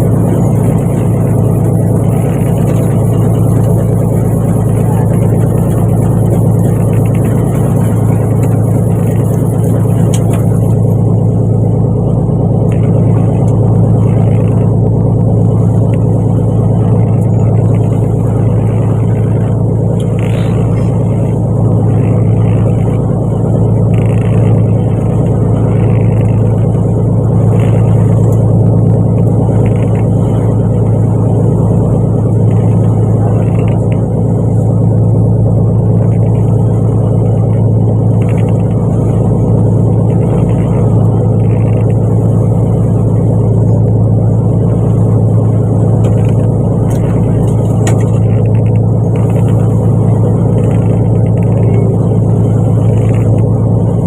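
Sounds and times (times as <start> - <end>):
boat engine low hum: 0.0 - 54.0.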